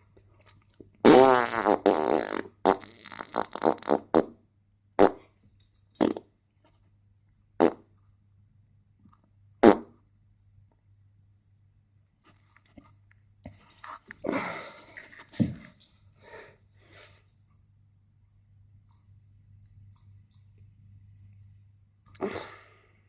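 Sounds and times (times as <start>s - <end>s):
faint electrical hum: 0.0s - 23.0s
farting: 1.0s - 4.3s, 5.0s - 5.2s, 7.6s - 7.8s, 9.6s - 9.9s.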